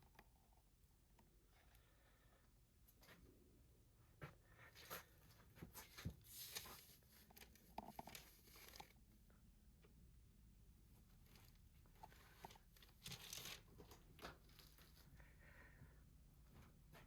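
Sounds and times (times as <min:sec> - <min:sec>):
small clicks and taps: 0:07.3 - 0:09.0
packaging rustling and crinkling: 0:12.1 - 0:15.0.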